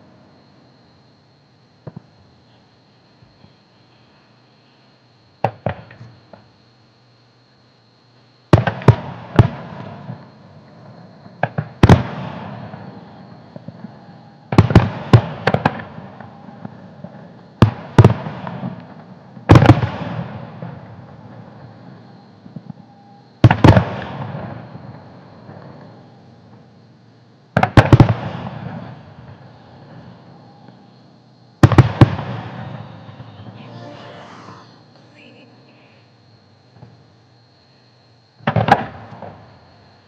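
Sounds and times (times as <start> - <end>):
fireworks bangs with rumbling echo: 5.4 - 6.0, 8.5 - 26.7, 27.5 - 30.9, 31.6 - 33.9, 38.4 - 39.7.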